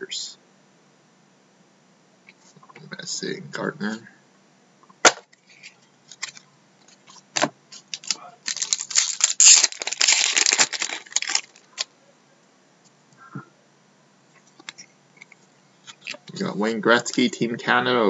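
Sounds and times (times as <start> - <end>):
packaging crinkling rustle: 5.4 - 11.9.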